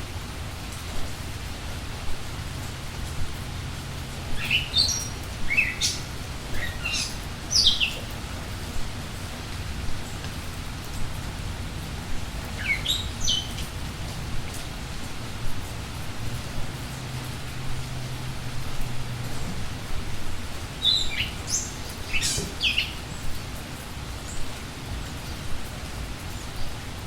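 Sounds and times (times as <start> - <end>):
rain falling: 0.0 - 27.0
birds chirping: 4.2 - 8.7, 12.3 - 13.7, 20.5 - 23.4.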